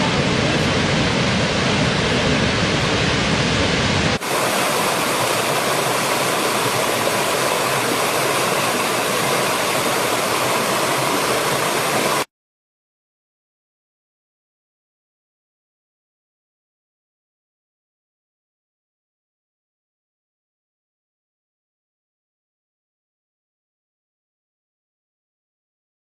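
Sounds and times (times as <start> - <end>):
waterfall rushing: 0.0 - 12.3.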